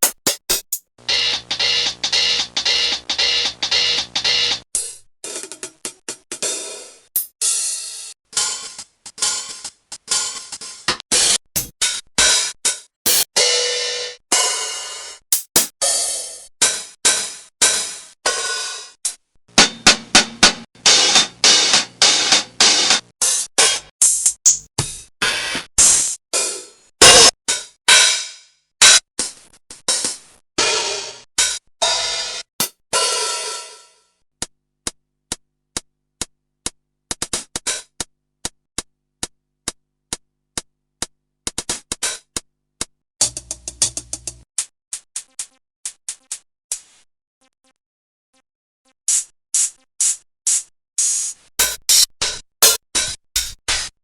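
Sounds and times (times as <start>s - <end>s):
hi-hat ticks: 0.0s - 0.9s, 15.4s - 15.7s, 51.6s - 52.8s, 53.4s - 53.6s
cymbal crashes: 51.6s - 51.8s.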